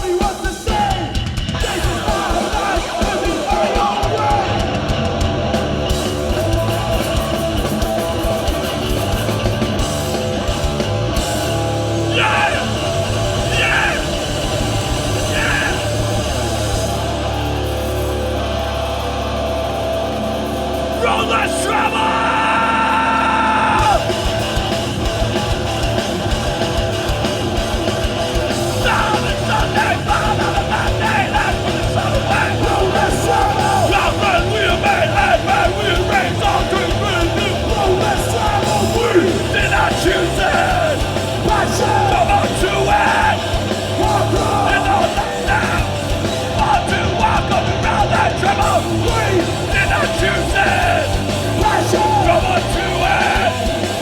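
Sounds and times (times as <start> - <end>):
punk band playing live: 0.0 - 54.0
person yelling vocals: 12.1 - 12.8, 13.4 - 14.1, 15.2 - 15.9.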